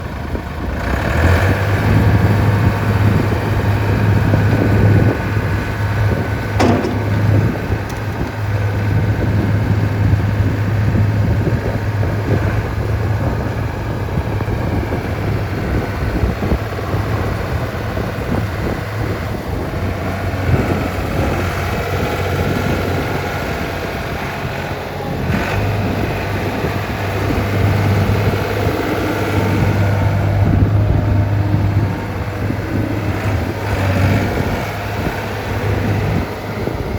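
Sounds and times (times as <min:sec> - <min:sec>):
skid steer engine running: 0:00.0 - 0:36.9
sharp click: 0:06.6 - 0:08.6.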